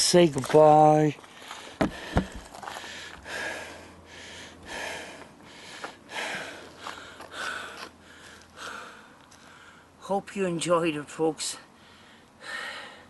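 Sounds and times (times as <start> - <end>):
man breathing heavily: 1.2 - 10.0, 11.6 - 13.0.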